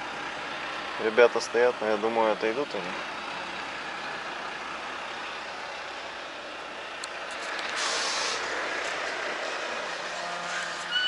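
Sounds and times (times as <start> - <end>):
truck running noise: 0.0 - 11.0
air brakes hissing: 7.6 - 11.0.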